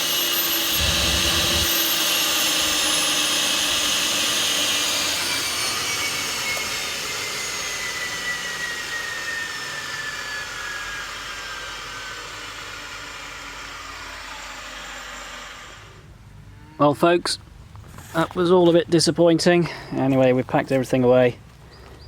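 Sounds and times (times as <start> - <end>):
turbine whine falling in pitch: 0.0 - 16.0.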